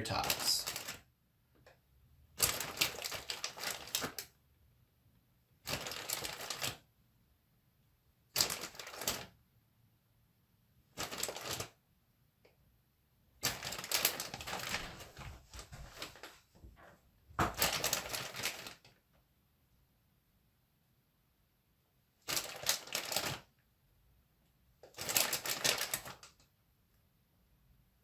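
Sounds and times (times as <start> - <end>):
frozen tater tots clicking and rattling: 0.1 - 1.1, 2.3 - 4.4, 5.6 - 6.8, 8.3 - 9.4, 10.9 - 11.8, 13.4 - 15.1, 17.5 - 18.9, 22.2 - 23.5, 24.8 - 26.4.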